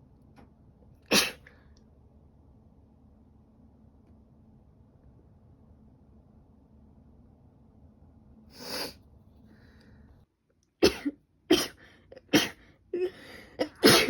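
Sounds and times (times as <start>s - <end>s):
woman sneezing: 1.1s - 1.4s, 10.8s - 14.0s.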